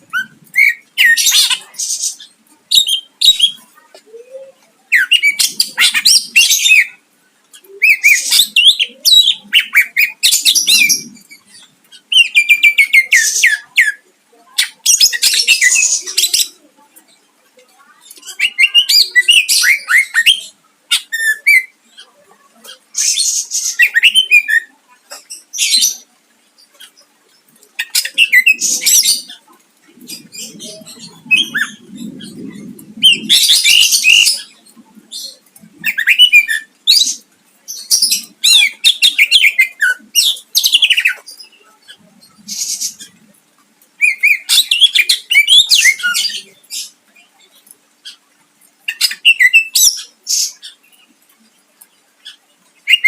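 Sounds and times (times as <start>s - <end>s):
bird singing rapid varied song: 48.8s - 51.1s.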